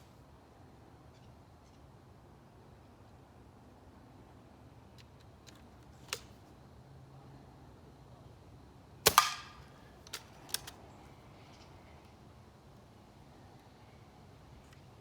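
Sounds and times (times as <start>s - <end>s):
air rifle shot: 9.1s - 9.6s
rifle handling clicks: 9.1s - 10.8s.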